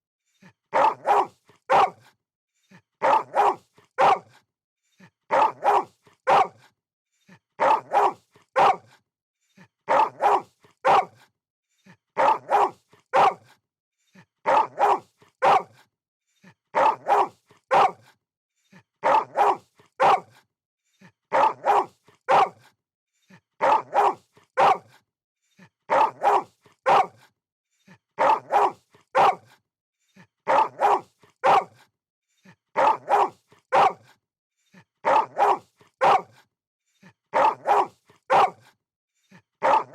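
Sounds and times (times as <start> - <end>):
dog barking: 0.7 - 2.2, 3.0 - 4.4, 5.3 - 6.7, 7.6 - 9.0, 9.9 - 11.3, 12.2 - 13.6, 14.4 - 15.9, 16.7 - 18.2, 19.0 - 20.4, 21.3 - 22.8, 23.6 - 25.0, 25.9 - 27.3, 28.2 - 29.6, 30.4 - 31.9, 32.8 - 34.2, 35.0 - 36.5, 37.3 - 38.8, 39.6 - 39.9.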